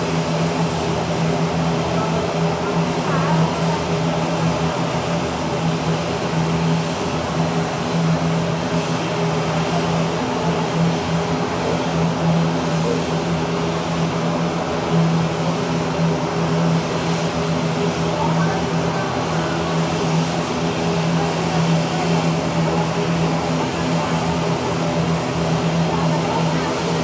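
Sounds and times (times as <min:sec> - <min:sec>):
turboprop engines droning: 0:00.0 - 0:27.0.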